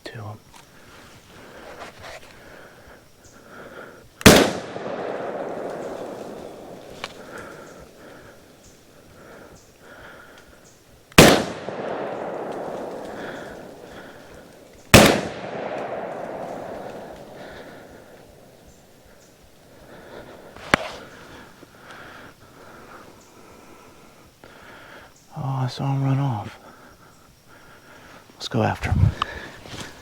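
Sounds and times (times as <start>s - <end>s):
shotgun shots with rolling echo: 4.2s - 8.0s, 11.2s - 21.0s.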